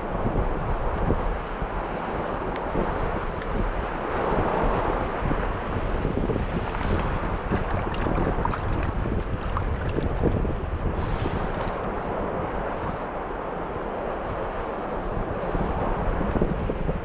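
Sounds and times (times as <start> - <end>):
gusty wind buffeting microphone: 0.0 - 17.0
waves washing against rocks: 3.0 - 13.2.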